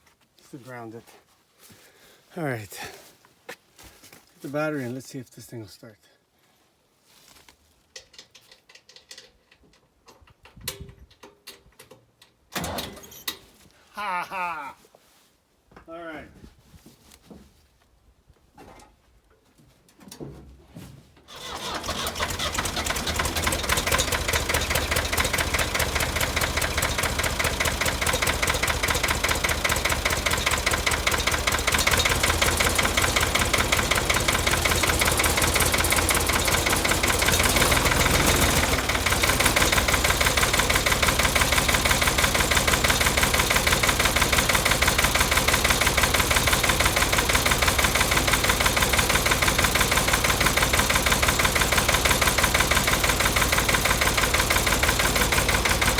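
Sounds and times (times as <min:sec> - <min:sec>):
engine starting: 0:12.5 - 0:13.4, 0:21.3 - 0:55.9
engine idling with even knock: 0:21.3 - 0:55.9.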